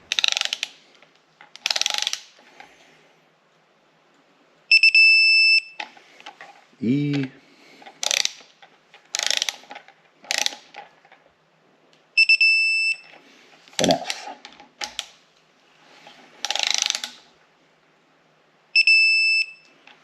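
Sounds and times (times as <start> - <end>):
ratchet wrench clicking: 0.1 - 0.7, 1.6 - 2.3, 8.0 - 8.4, 9.1 - 9.6, 10.3 - 10.6, 16.5 - 17.2.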